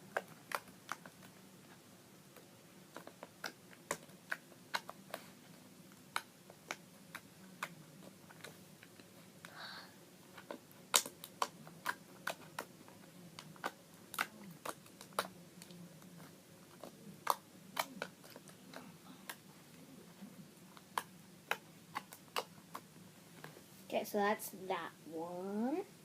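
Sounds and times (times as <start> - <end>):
slime clicking and popping: 10.4 - 12.7.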